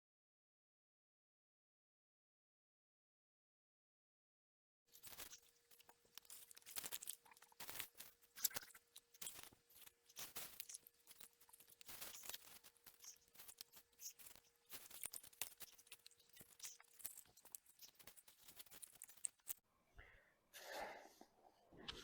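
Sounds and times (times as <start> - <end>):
hands digging through straw and soil: 5.0 - 19.6.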